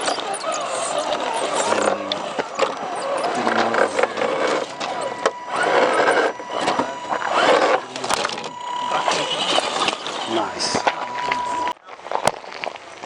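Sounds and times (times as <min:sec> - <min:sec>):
distant voices: 0:00.0 - 0:13.0
footsteps crunching on gravel: 0:10.7 - 0:13.0.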